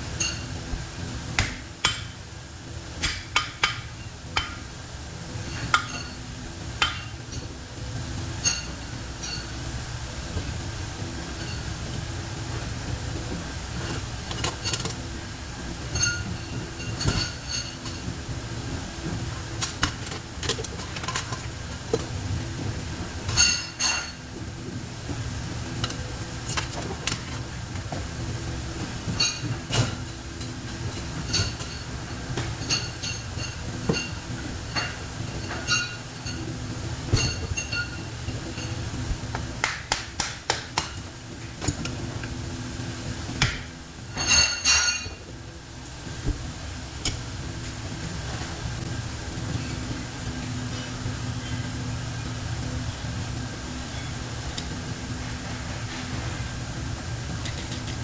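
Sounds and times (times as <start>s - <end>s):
steady low hum: 0.0s - 58.0s
metal tools clinking on metal: 34.8s - 36.4s, 37.2s - 38.8s, 44.1s - 45.2s.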